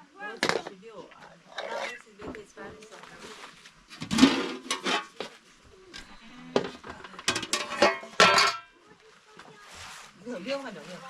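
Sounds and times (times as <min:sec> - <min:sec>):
utensil knocking metal pot: 0:07.2 - 0:08.7.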